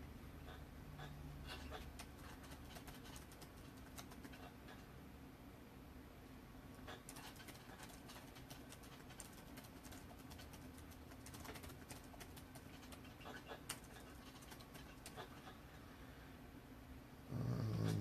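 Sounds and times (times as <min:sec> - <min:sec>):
faint steady hum: 0:00.0 - 0:18.0
typing on computer keyboard: 0:01.6 - 0:04.5, 0:07.1 - 0:15.3.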